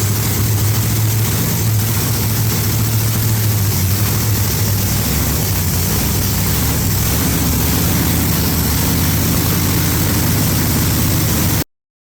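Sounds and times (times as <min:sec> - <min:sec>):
car engine running: 0:00.0 - 0:11.7.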